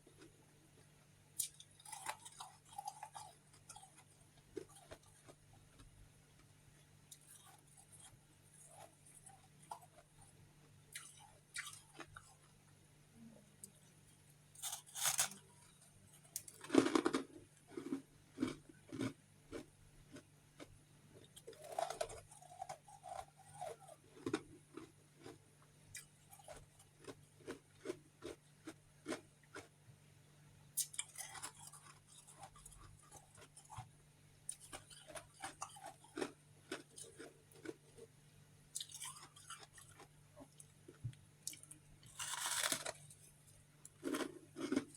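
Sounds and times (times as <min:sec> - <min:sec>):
crunching ice chewing: 0:01.4 - 0:05.9, 0:07.1 - 0:10.1, 0:10.9 - 0:12.4, 0:14.6 - 0:29.7, 0:30.8 - 0:33.9, 0:34.5 - 0:38.0, 0:38.8 - 0:40.7, 0:41.5 - 0:43.2, 0:43.8 - 0:44.9.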